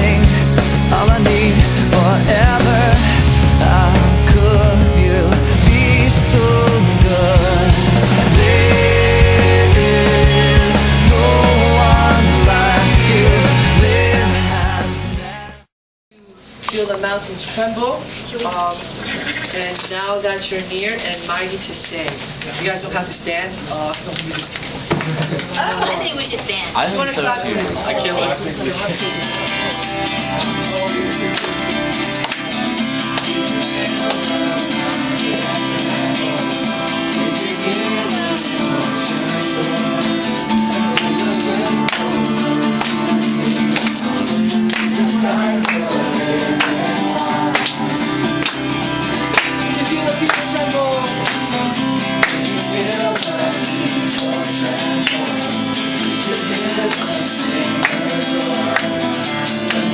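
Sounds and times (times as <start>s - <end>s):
strummed acoustic guitar: 0.0s - 15.5s, 28.6s - 59.9s
person singing: 0.0s - 15.7s, 32.5s - 59.9s.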